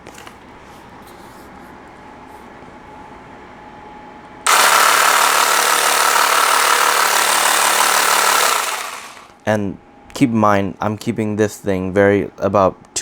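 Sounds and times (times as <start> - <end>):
massage gun buzzing: 4.5 - 9.3.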